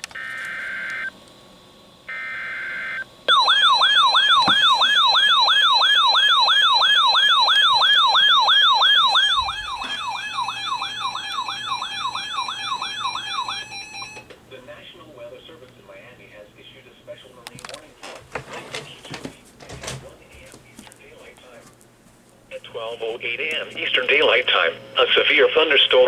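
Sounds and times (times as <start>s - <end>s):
warbling siren-like alert tone: 2.1s - 14.2s.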